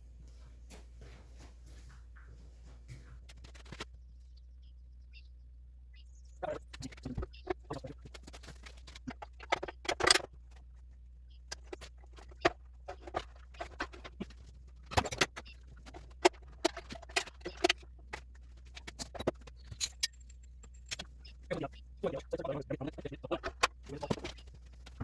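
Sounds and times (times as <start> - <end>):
steady low hum: 0.0 - 25.0
metal tools clicking and scraping: 11.5 - 21.4.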